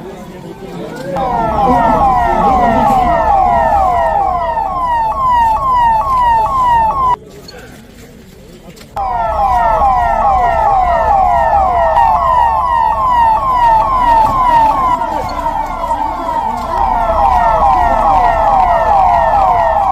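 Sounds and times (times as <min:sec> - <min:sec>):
emergency vehicle siren: 0:01.0 - 0:07.2, 0:09.0 - 0:19.9.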